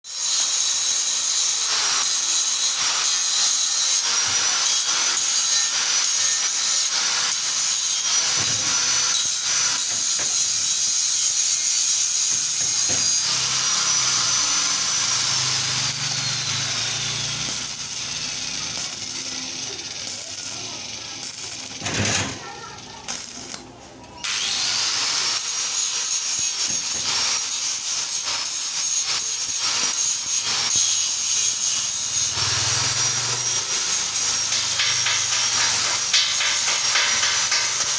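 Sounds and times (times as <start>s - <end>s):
power tool whining on metal: 0.1s - 23.6s, 24.2s - 37.9s.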